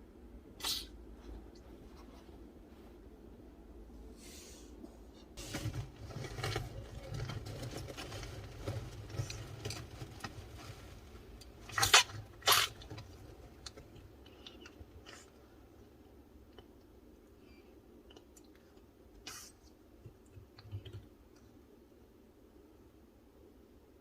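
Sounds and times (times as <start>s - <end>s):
tortoise sneezing: 0.6s - 1.0s
faint clicks and rustles: 4.9s - 21.6s.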